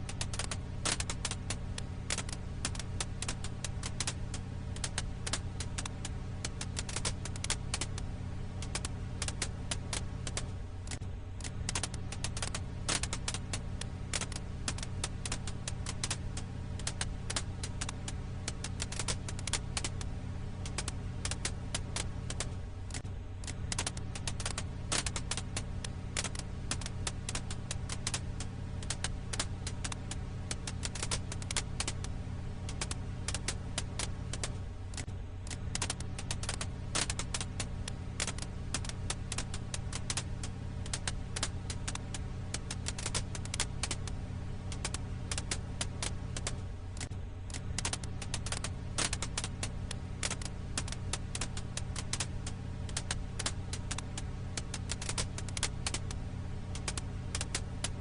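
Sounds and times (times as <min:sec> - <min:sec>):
low fire rumble: 0:00.0 - 0:58.0
wood fire crackling: 0:00.0 - 0:58.0.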